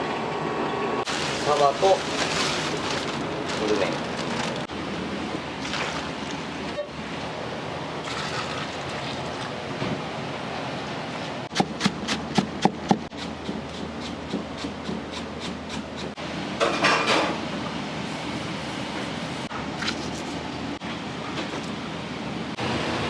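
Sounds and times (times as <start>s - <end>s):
steady kitchen hiss: 1.0s - 23.0s.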